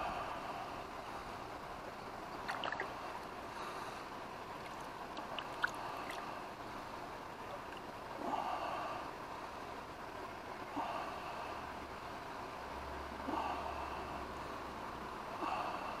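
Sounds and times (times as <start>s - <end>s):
river water rushing: 2.2s - 8.6s.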